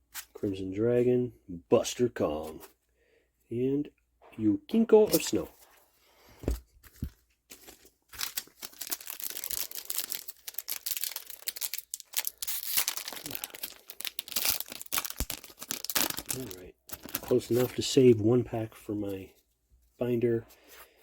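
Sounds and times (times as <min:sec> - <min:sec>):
foil wrappers tearing and crinkling: 0:07.6 - 0:17.9.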